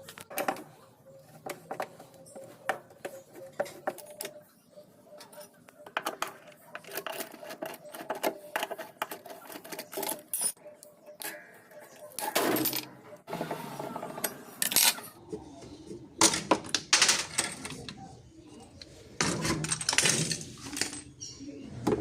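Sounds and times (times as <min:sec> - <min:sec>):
clatter of parts and tools: 0:05.2 - 0:10.6, 0:16.2 - 0:18.0, 0:19.2 - 0:21.2.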